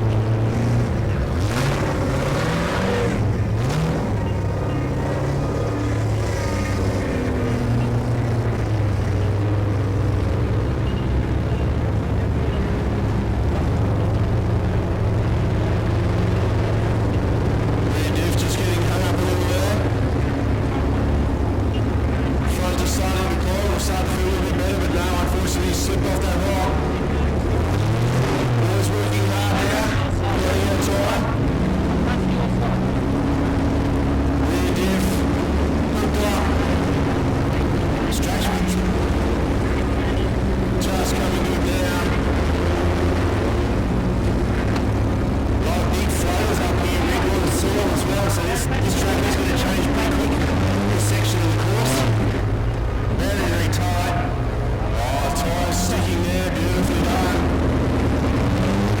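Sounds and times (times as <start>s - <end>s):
truck engine running steadily: 0.0s - 59.0s.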